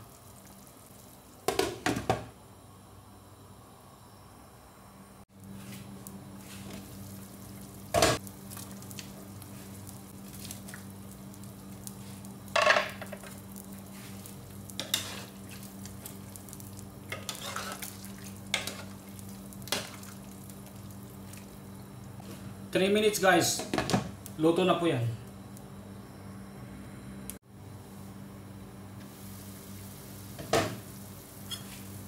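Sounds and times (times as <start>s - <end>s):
soup bubbling in a pot: 0.0s - 2.0s, 5.9s - 22.2s
steady low hum: 2.2s - 32.0s.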